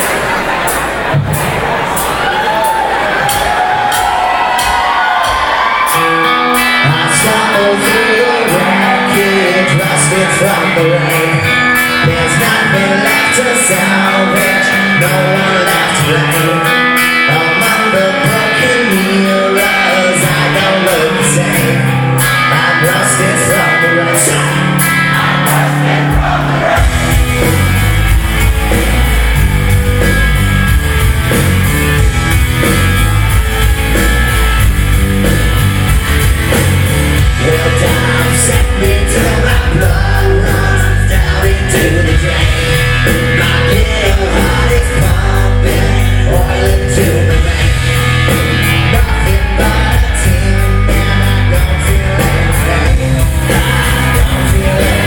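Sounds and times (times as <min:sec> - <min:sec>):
rock band playing live: 0:00.0 - 0:55.0
person singing: 0:05.8 - 0:27.0, 0:36.5 - 0:55.0
heavy bass and drums: 0:17.3 - 0:55.0.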